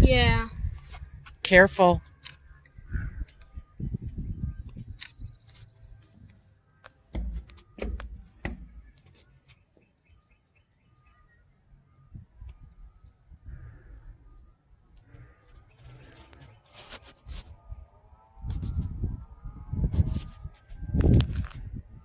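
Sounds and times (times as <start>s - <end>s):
faint bird chirps: 7.4s - 16.7s.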